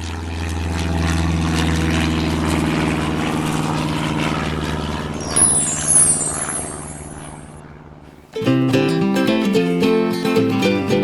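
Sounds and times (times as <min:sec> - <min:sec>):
engine-like droning hum: 0:00.0 - 0:11.0
high chime running downward: 0:05.2 - 0:07.5.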